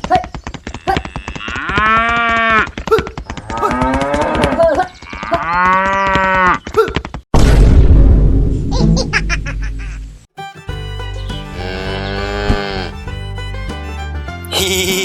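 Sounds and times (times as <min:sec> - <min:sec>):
cattle mooing: 0:11.5 - 0:13.0.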